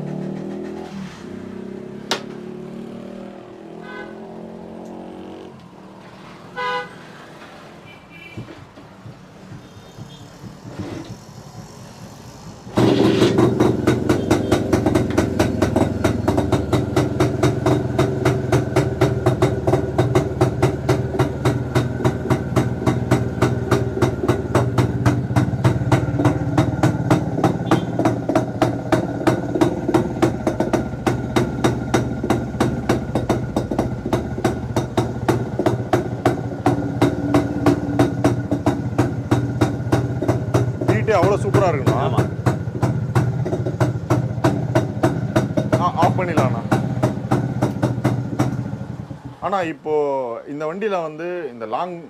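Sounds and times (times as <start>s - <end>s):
two-stroke motorcycle engine: 0.0s - 5.6s, 9.0s - 49.7s
horn toots: 3.6s - 4.6s, 6.5s - 7.1s, 12.8s - 15.0s, 27.6s - 28.1s.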